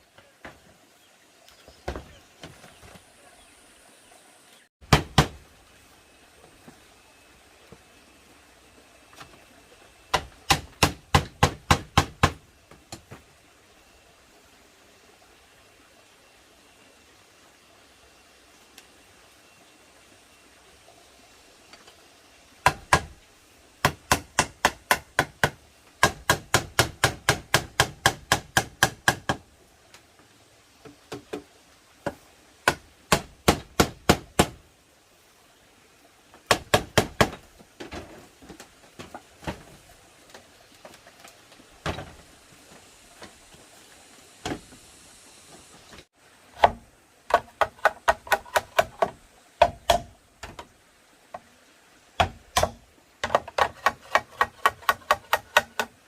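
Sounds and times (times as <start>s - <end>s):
hammer blows on bamboo: 10.1s - 12.5s, 22.6s - 23.2s, 23.8s - 29.5s, 30.8s - 34.6s, 36.5s - 37.4s, 46.6s - 50.6s, 52.2s - 56.0s.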